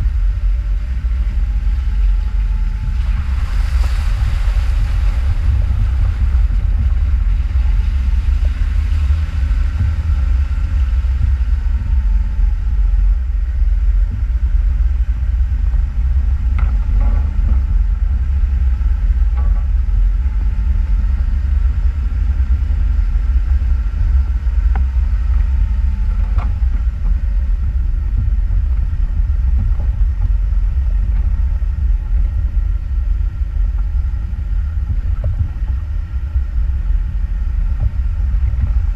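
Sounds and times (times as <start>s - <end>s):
off-road vehicle rumbling: 0.0s - 38.9s.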